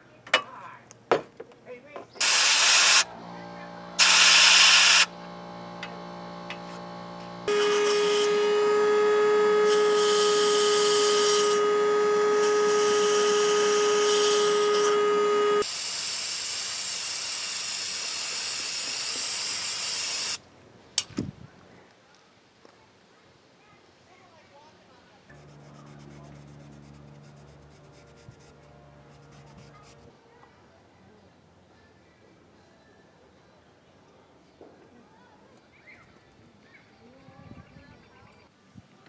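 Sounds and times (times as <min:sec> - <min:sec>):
loud hiss: 0:02.2 - 0:03.1, 0:04.0 - 0:05.1, 0:07.5 - 0:20.4
spraying air hiss: 0:02.2 - 0:03.1, 0:04.0 - 0:05.1, 0:07.5 - 0:20.4
small power tool running: 0:02.2 - 0:20.4, 0:25.3 - 0:30.1.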